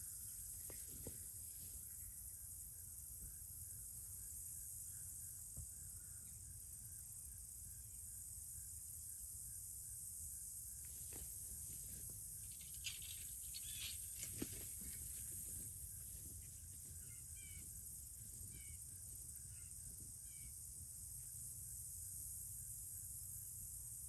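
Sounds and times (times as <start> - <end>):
insects droning: 0.0 - 24.0
faint clicks and rustles: 10.8 - 16.5
bird chirping: 12.8 - 14.2.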